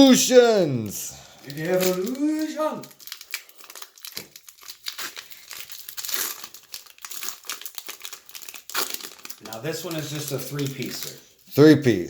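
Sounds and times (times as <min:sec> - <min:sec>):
foil wrapper crinkling: 0:00.0 - 0:11.5.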